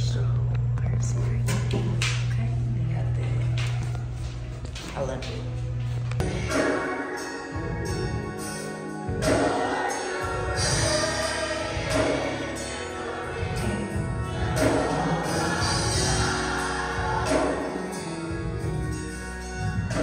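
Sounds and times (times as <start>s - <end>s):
gospel song with choir singing: 6.2s - 20.0s.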